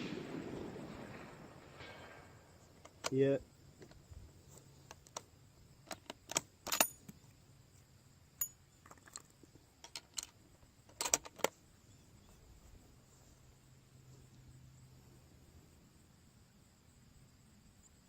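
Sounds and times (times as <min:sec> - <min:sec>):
rifle bolt metallic clicks: 0:05.9 - 0:07.2.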